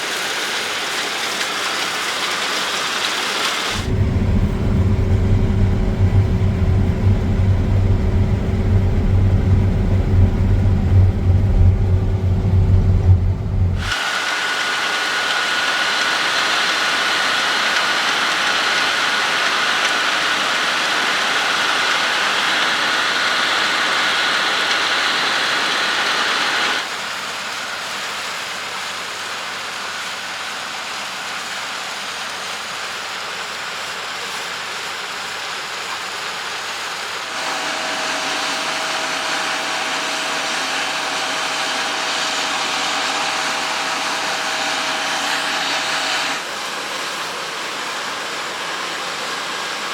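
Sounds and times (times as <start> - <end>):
combine harvester running: 0.0 - 49.9
high whine: 3.7 - 14.0.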